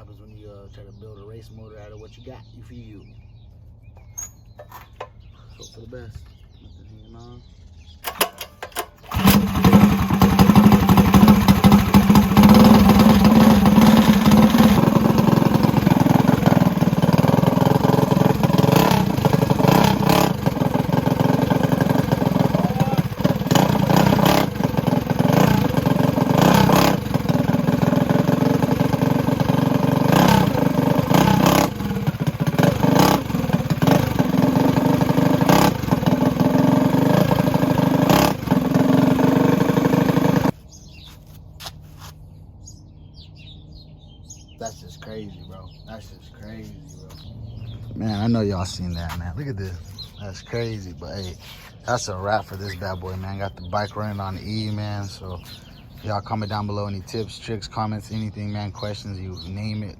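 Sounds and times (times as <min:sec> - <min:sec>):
engine pull-started and running: 0:08.0 - 0:40.6.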